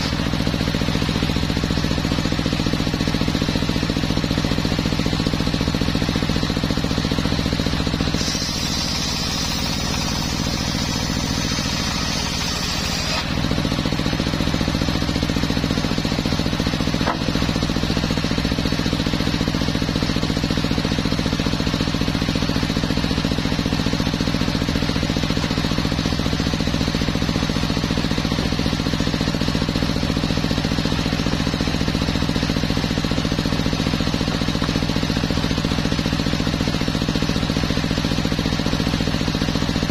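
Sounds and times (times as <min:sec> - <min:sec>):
sawmill engine running: 0:00.0 - 0:39.9
saw blade rasping through wood: 0:08.0 - 0:13.6, 0:16.9 - 0:17.7.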